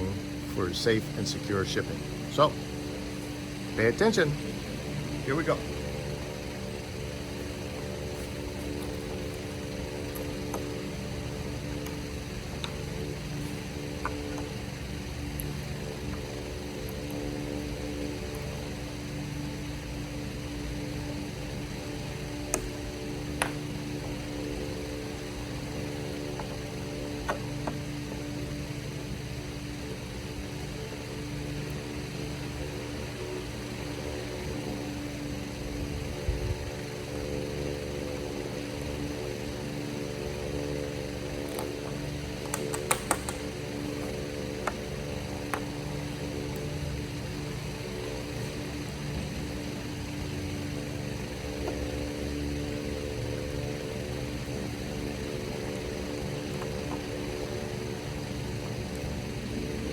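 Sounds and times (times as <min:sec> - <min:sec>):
steady mechanical hum: 0:00.0 - 0:59.9
sharp clicks: 0:42.4 - 0:43.6.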